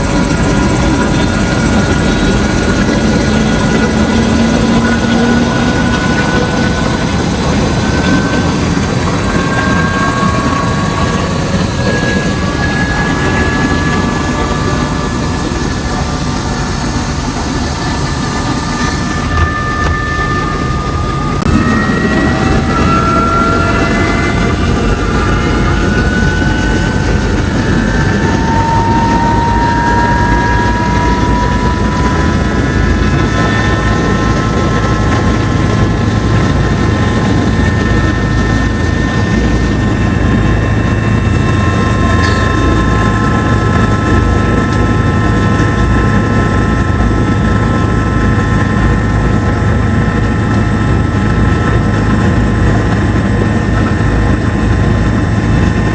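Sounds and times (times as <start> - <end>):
helicopter engine and rotor noise: 0.0 - 55.9
whining turbine tones: 0.0 - 55.9.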